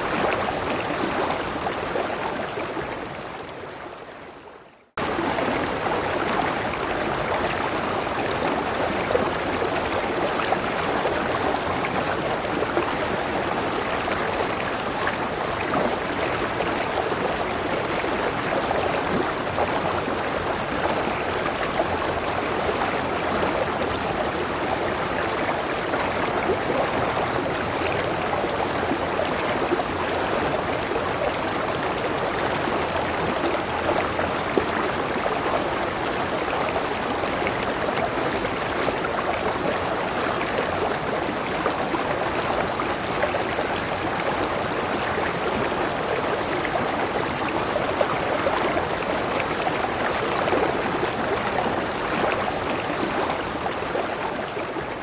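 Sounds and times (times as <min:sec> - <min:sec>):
river water rushing: 0:05.0 - 0:55.0.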